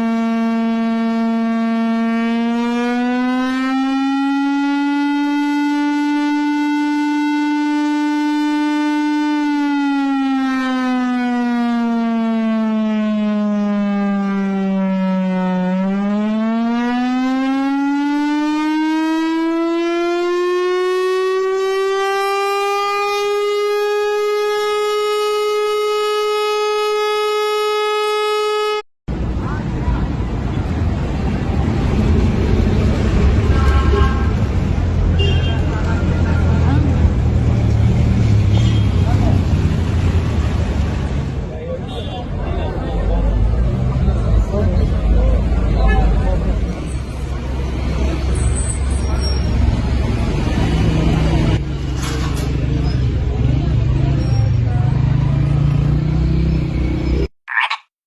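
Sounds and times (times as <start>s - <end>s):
air-raid siren wailing: 0.0s - 28.9s, 42.6s - 57.3s.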